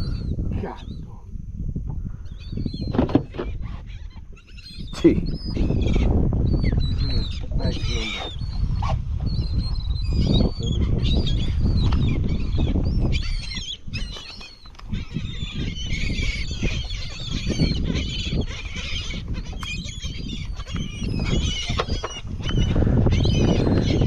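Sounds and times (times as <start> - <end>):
steady low rumble: 0.0 - 2.7
seabirds calling shrilly: 2.0 - 24.0.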